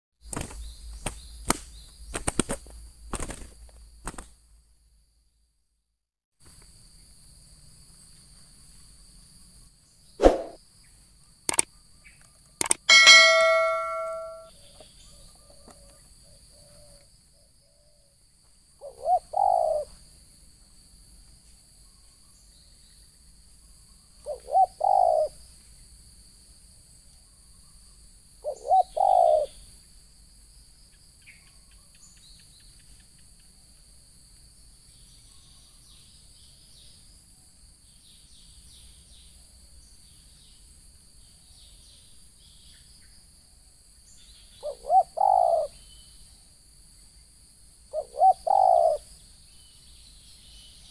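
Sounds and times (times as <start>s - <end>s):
dove cooing: 18.8s - 19.9s, 24.3s - 25.3s, 28.4s - 29.5s, 44.6s - 45.7s, 48.0s - 49.0s.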